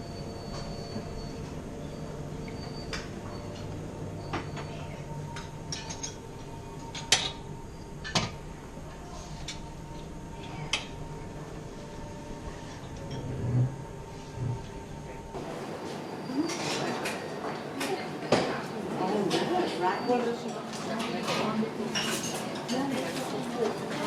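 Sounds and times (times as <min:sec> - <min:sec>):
room hum: 0:00.0 - 0:24.0
dishes and cutlery clinking: 0:16.4 - 0:24.0.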